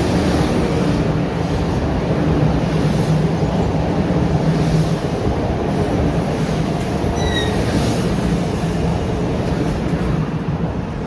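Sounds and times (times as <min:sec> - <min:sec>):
train rumbling with low hum: 0:00.0 - 0:11.0
faint high squeal: 0:07.2 - 0:07.6.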